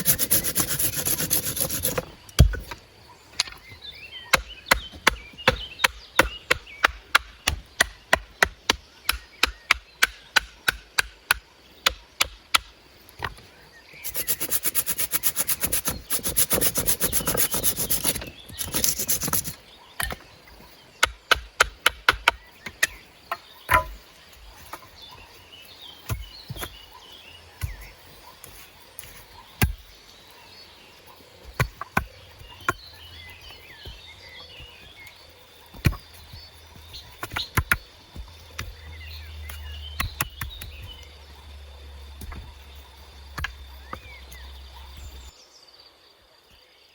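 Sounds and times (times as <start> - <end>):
fast sawing strokes: 0.0 - 2.1, 14.0 - 19.6
hand tool strokes on wood: 0.0 - 2.1, 14.0 - 19.6.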